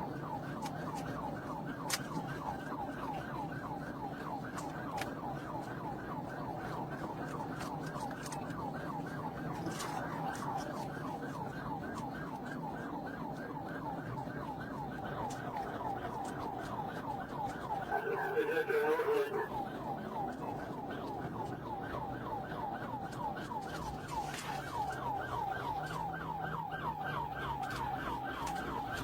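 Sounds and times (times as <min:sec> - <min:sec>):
police siren yelping: 0:00.0 - 0:29.0
engine and road noise: 0:13.3 - 0:29.0.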